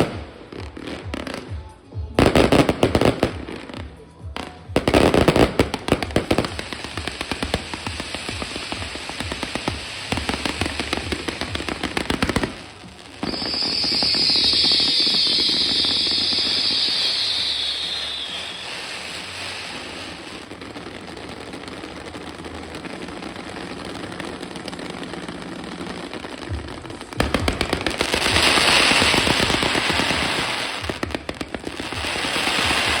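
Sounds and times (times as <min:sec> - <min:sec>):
fireworks crackling: 0:00.0 - 0:33.0
loud high hiss: 0:06.6 - 0:20.4.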